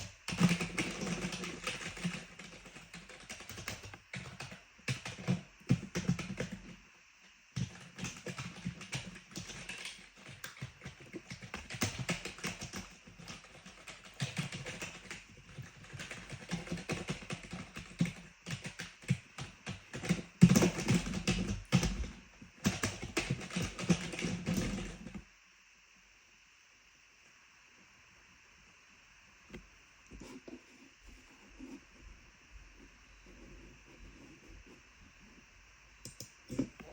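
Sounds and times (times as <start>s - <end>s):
clicky keyboard typing: 0.0s - 6.8s, 7.6s - 25.2s, 36.0s - 36.9s.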